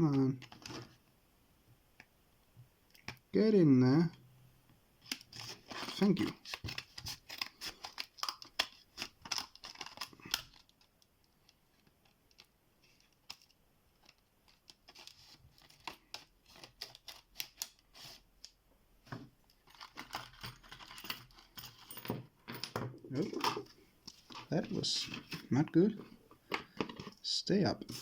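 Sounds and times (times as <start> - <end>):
plastic packaging crinkling: 5.3 - 11.0.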